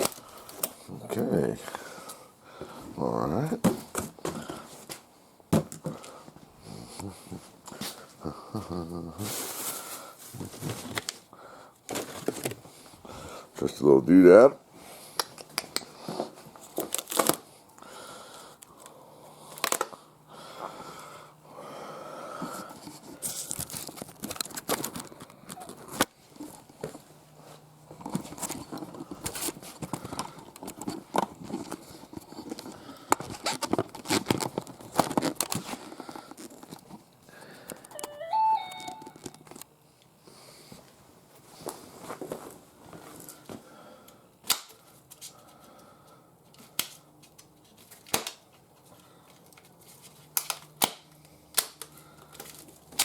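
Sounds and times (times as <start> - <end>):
packaging tearing and crinkling: 16.6 - 17.4, 33.3 - 36.8.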